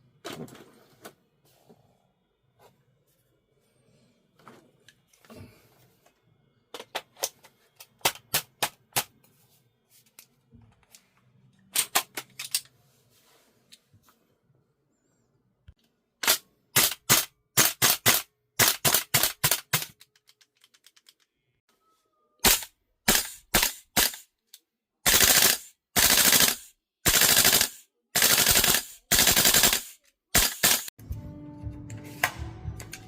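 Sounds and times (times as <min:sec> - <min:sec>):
airsoft rifle full-auto bursts: 0:25.0 - 0:30.9.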